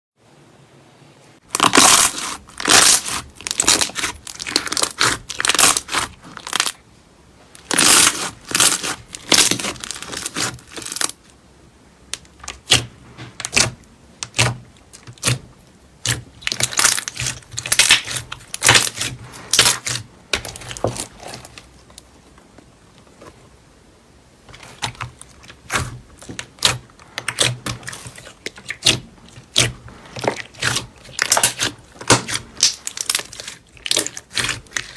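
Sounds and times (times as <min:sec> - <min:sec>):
slime squishing and clicking: 0:12.2 - 0:15.4, 0:24.8 - 0:34.9.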